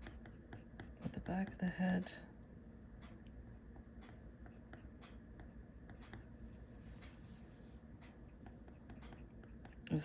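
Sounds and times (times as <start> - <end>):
pencil shading on paper: 0.0 - 1.8, 3.5 - 7.3, 8.2 - 10.0.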